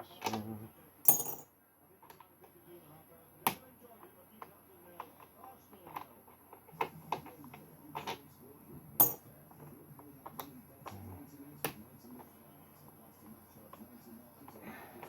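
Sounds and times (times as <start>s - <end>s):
sharp clink: 1.1s - 1.5s.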